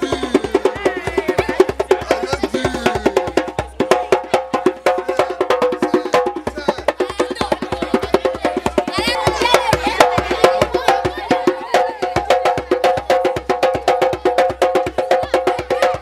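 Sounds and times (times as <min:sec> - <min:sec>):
wooden percussion music: 0:00.0 - 0:16.0.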